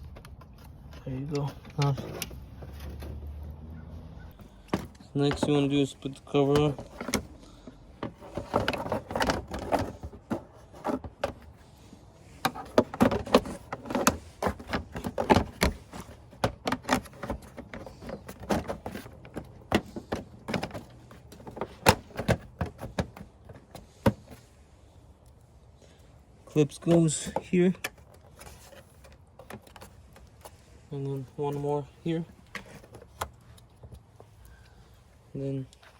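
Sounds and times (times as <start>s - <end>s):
plastic cover clicking and knocking: 6.5s - 11.4s, 12.4s - 24.2s.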